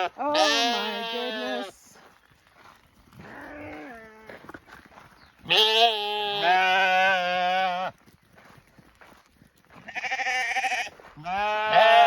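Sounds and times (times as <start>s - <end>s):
sheep bleating: 0.0s - 1.8s, 5.4s - 8.0s, 9.8s - 12.0s.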